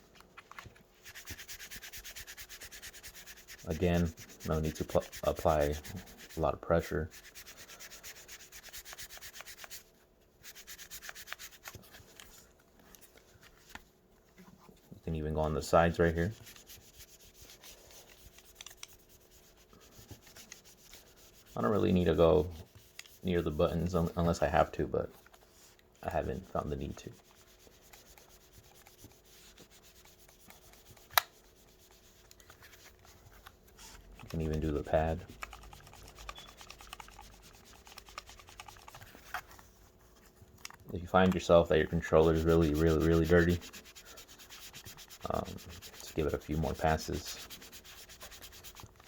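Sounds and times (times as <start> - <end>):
foam pad scrubbing plastic: 1.0 - 11.8, 41.1 - 49.0
foam pad rubbing plastic: 1.0 - 12.0, 15.8 - 24.7, 25.4 - 40.3, 41.1 - 49.0.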